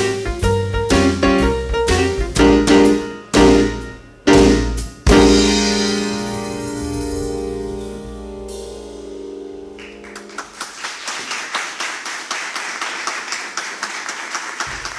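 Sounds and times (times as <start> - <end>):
audience applause: 9.8 - 14.9.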